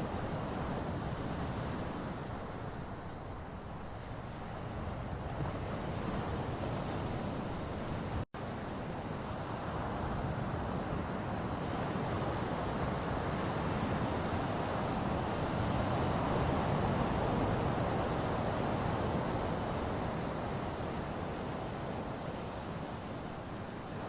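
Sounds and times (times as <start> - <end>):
ocean surf washing ashore: 0.0 - 24.0.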